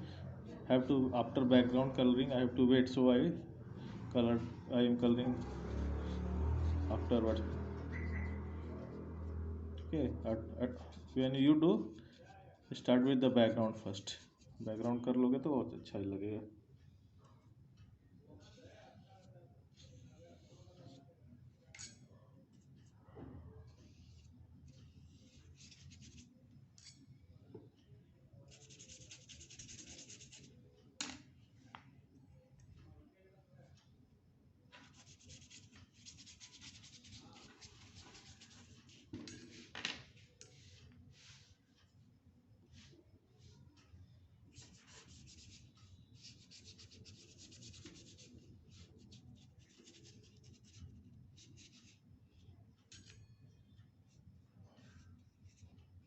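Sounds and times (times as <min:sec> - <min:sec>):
scratchy colouring on paper: 0:18.4 - 0:21.0, 0:23.7 - 0:26.3, 0:28.5 - 0:30.5, 0:34.9 - 0:39.6, 0:44.5 - 0:52.0.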